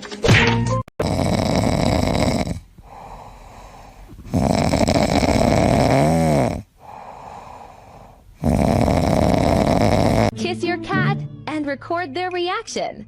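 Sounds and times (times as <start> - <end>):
pet snoring: 1.0 - 10.3
quiet breaths: 1.1 - 10.3.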